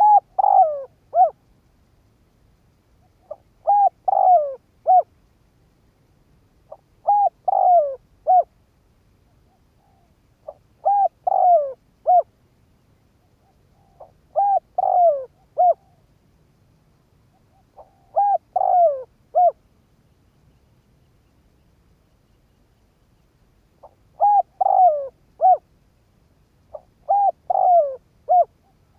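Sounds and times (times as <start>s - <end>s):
dove cooing: 0.0s - 1.4s, 3.0s - 5.1s, 6.7s - 8.6s, 9.3s - 12.3s, 13.3s - 16.1s, 17.3s - 19.6s, 23.8s - 25.7s, 26.7s - 28.9s.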